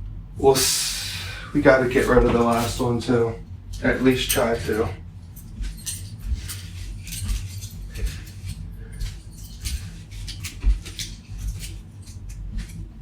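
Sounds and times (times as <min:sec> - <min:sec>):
handling clicks rustles and scrapes: 0:03.7 - 0:12.9.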